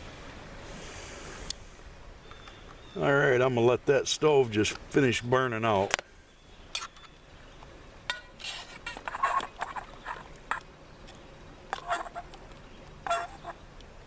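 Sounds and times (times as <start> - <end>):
utensil scraping metal cookware: 8.1 - 10.6, 11.8 - 12.3, 13.1 - 13.6
short squeaks: 13.0 - 13.6.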